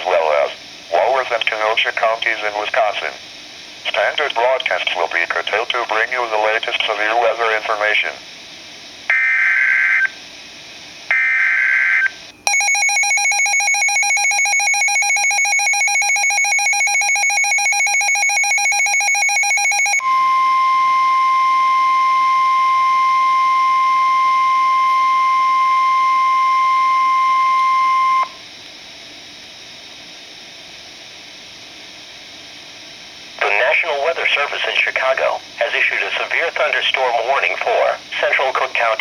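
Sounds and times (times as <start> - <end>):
steady warning alarm tone: 9.1 - 10.2, 11.1 - 28.4
rapidly pulsing alarm beep: 11.1 - 28.4.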